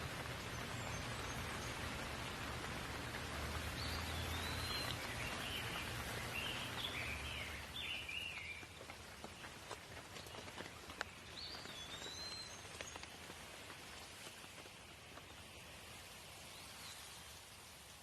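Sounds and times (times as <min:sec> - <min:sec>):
rain falling: 0:00.0 - 0:18.0
bird chirping: 0:03.8 - 0:08.8.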